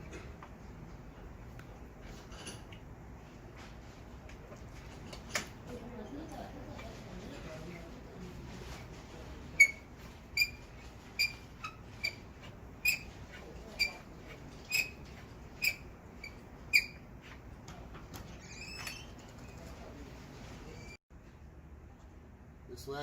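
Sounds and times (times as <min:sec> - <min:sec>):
brief squeak: 0:18.4 - 0:19.5.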